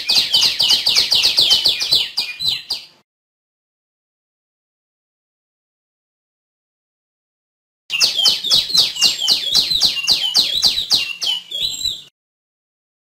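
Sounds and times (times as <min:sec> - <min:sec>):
songbird calling sharp falling notes: 0:00.0 - 0:03.0, 0:07.9 - 0:12.1.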